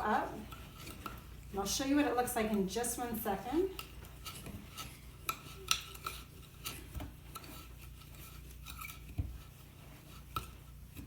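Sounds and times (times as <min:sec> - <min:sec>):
utensil scraping and clinking on jar: 0:00.0 - 0:11.0
utensil stirring powder in a jar: 0:00.0 - 0:11.0.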